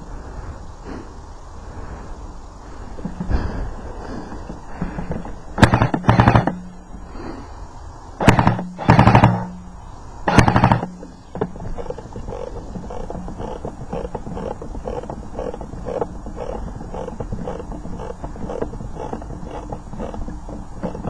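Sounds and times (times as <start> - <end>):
airsoft gun firing bursts: 5.6 - 6.6, 8.2 - 9.6, 10.2 - 11.1.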